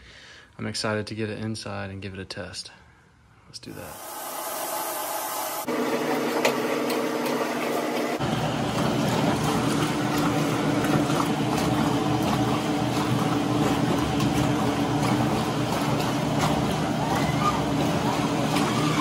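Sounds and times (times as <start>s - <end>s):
washing machine motor hum: 3.8s - 19.0s
water filling and swishing in tub: 3.8s - 19.0s.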